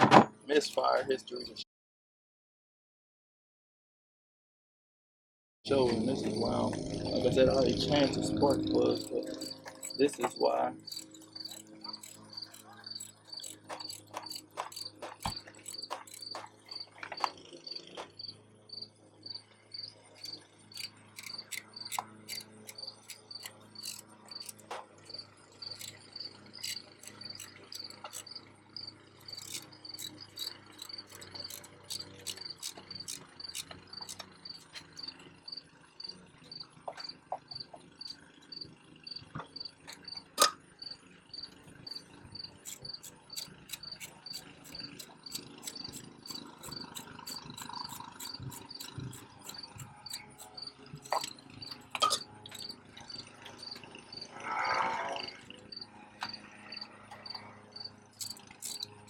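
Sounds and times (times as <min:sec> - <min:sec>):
cricket chirping: 0:07.5 - 0:54.4, 0:55.7 - 0:59.0
handling clicks and knocks: 0:09.0 - 0:18.2, 0:20.2 - 0:28.4, 0:29.2 - 0:35.1, 0:42.6 - 0:52.8, 0:58.2 - 0:59.0.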